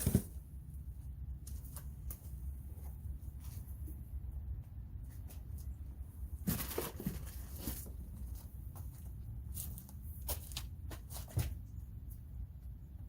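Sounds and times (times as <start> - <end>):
low steady rumble: 0.0 - 13.0.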